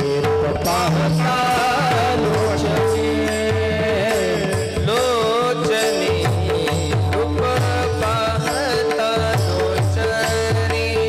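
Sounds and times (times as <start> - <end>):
steady held tones: 0.9 - 8.9
gliding devotional melody: 1.3 - 9.0.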